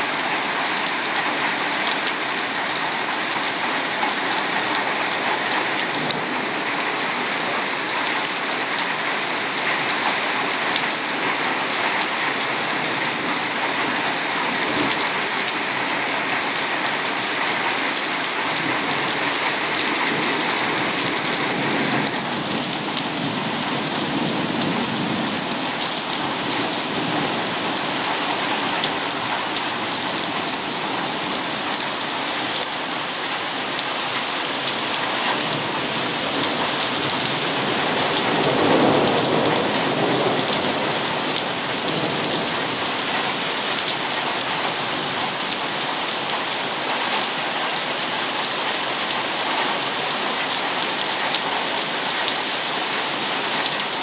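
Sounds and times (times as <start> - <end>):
heavy rain pouring: 0.0 - 54.0
thunder rumble: 18.6 - 28.3, 35.4 - 43.2.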